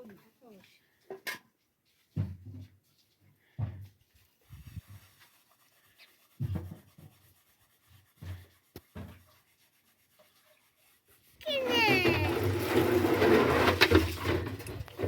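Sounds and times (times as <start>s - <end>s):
soft knocks and rubbing: 1.2s - 5.0s, 6.3s - 7.4s, 8.0s - 9.6s.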